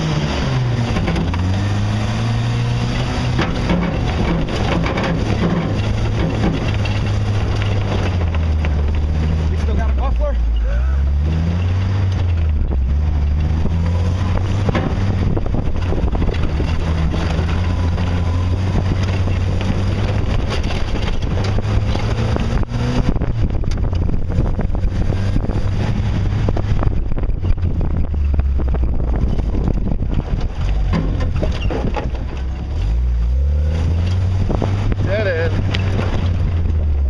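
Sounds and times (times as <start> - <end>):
engine running at low speed: 0.0 - 37.0
knocks and rattles from underneath: 2.7 - 10.1, 11.3 - 23.0, 26.6 - 32.9.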